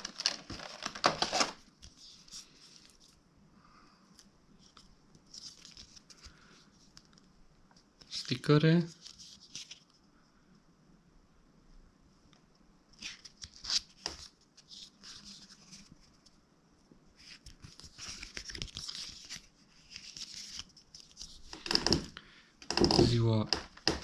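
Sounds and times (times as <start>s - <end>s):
packaging tearing: 0.0s - 1.7s
paper rustling and crinkling: 0.0s - 3.2s, 4.6s - 7.3s, 8.0s - 10.0s, 12.9s - 16.4s, 17.2s - 22.1s.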